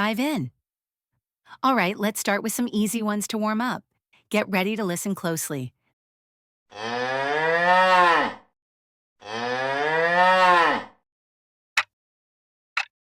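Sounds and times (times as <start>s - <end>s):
cow mooing: 6.7s - 8.5s, 9.2s - 11.0s.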